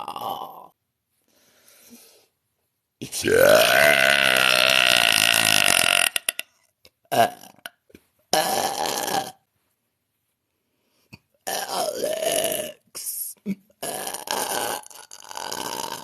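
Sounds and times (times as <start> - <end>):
woman belching: 0.0 - 0.7, 3.1 - 6.4, 7.1 - 7.8, 8.4 - 9.4, 11.5 - 12.8, 13.5 - 16.0.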